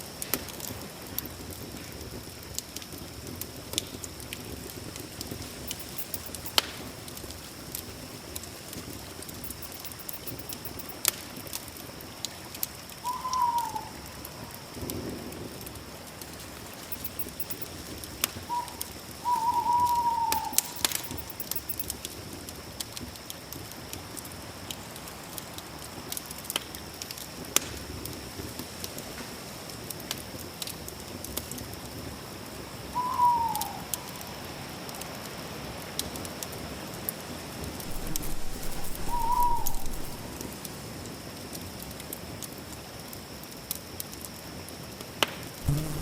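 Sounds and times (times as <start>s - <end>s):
high-pitched insect drone: 5.6s - 6.8s, 9.4s - 11.1s, 16.7s - 17.9s, 19.3s - 21.9s, 37.9s - 40.3s, 45.6s - 46.0s
bird calling: 5.7s - 6.7s, 9.4s - 11.0s, 16.8s - 17.7s, 18.4s - 21.8s, 37.9s - 40.3s, 45.6s - 46.0s.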